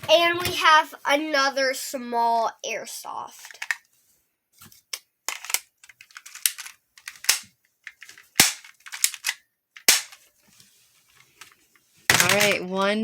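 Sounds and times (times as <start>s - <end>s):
airsoft pistol snaps and clicks: 9.2s - 10.1s.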